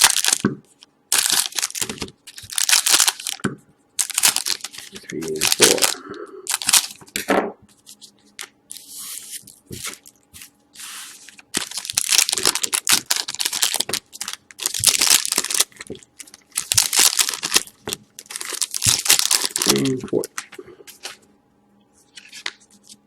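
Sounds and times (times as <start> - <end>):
card pack wrappers tearing: 0.0 - 0.4, 1.1 - 3.4, 4.0 - 7.2, 10.8 - 21.2.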